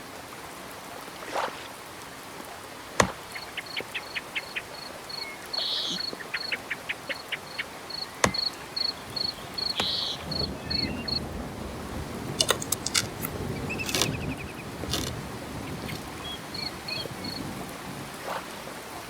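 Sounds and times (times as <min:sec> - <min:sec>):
cricket chirping: 0:03.4 - 0:17.5.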